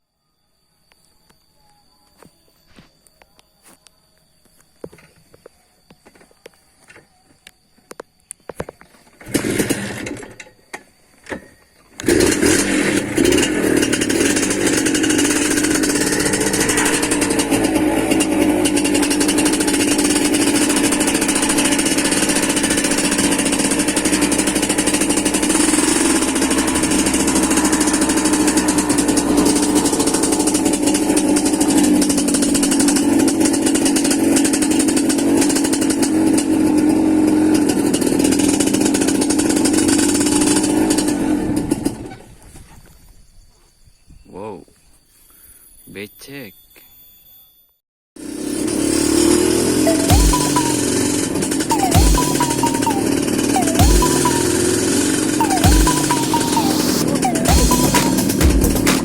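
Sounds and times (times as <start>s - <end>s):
motorcycle engine starting and idling: 8.6s - 42.8s, 48.2s - 59.0s.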